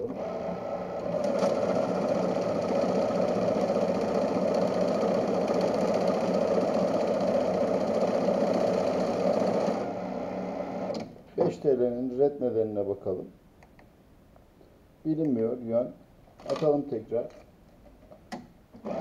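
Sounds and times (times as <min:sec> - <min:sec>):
banknote counting machine rattling: 0:01.2 - 0:09.7.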